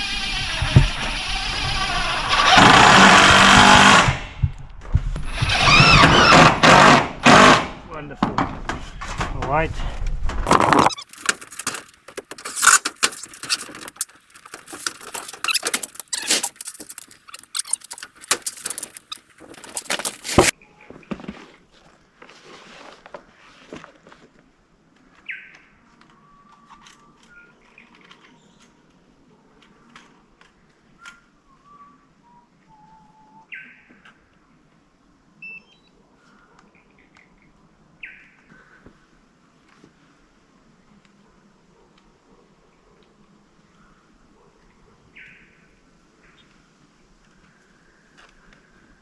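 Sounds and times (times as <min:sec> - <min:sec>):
faint outdoor background: 0:00.0 - 0:49.0
dense clattering and jangling: 0:10.5 - 0:20.5.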